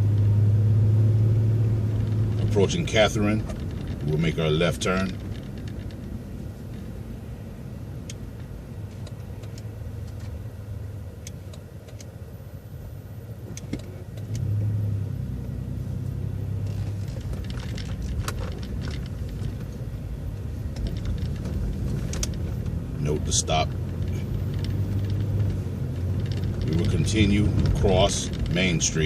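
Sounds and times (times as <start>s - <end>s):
bus engine humming: 0.0s - 29.0s
rattles and clicks: 1.9s - 7.0s, 16.6s - 29.0s.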